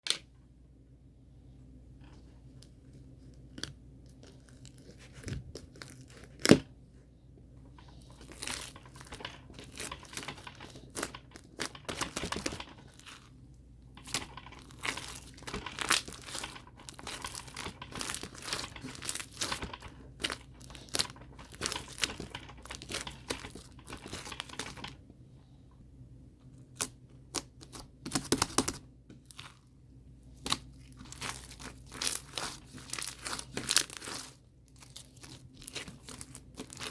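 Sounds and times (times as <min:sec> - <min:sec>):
material crinkling and tearing: 0:03.2 - 0:06.6, 0:07.8 - 0:25.0, 0:30.3 - 0:36.9.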